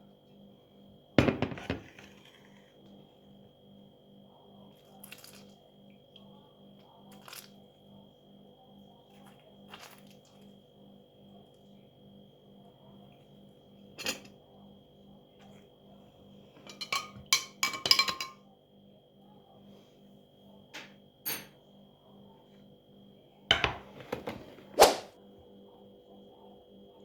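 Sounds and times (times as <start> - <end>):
crockery clinking: 16.6 - 18.4.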